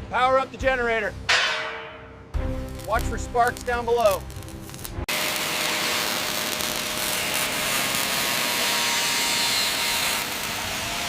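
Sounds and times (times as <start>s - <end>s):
power grinder grinding steel: 4.3s - 11.0s.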